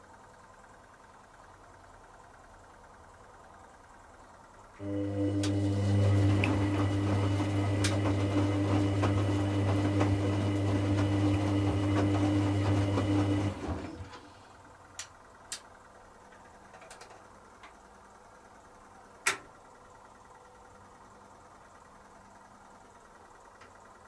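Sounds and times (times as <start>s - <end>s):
drain pump humming: 4.7s - 14.6s
washing machine clicks: 7.5s - 8.3s, 19.2s - 19.6s.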